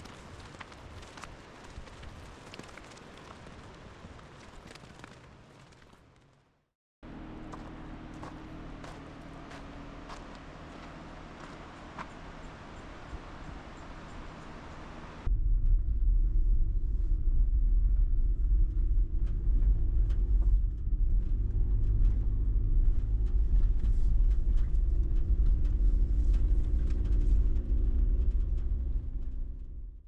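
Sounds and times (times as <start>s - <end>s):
car road and engine rumble: 7.0s - 30.0s.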